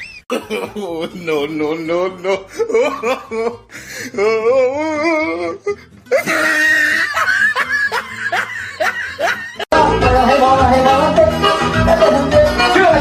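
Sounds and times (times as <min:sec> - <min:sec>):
person laughing: 0:00.0 - 0:09.7
upbeat music: 0:07.2 - 0:13.0.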